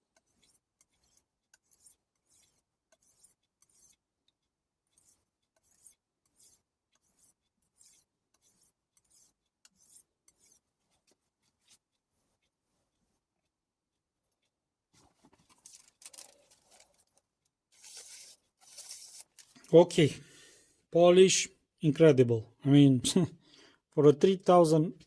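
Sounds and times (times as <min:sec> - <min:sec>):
knife sharpening on whetstone: 0:00.2 - 0:04.0, 0:04.9 - 0:10.6.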